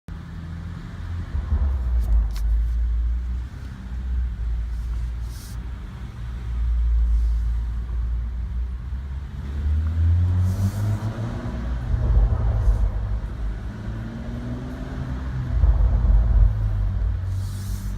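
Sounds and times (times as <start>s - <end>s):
exhaust pops: 1.2s - 3.5s, 10.4s - 17.9s
car engine revving: 8.9s - 17.9s.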